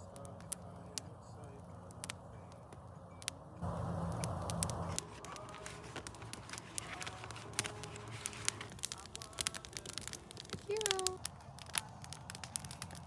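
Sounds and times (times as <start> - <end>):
wood fire crackling: 0.0 - 13.0
low rushing noise: 3.5 - 9.6
sharp pops: 4.0 - 13.0.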